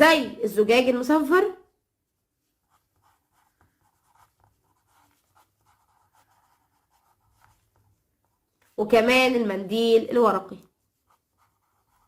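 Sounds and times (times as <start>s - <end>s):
pen scratching while writing: 2.6s - 8.8s, 10.8s - 12.0s.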